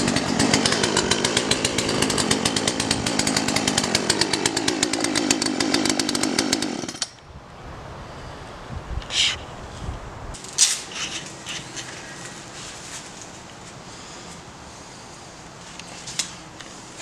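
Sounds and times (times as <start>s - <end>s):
chainsaw engine running: 0.0s - 7.2s.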